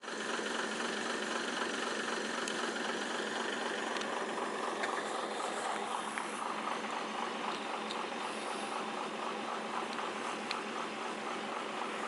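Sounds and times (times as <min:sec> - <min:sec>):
diesel truck engine idling: 0:00.0 - 0:12.0.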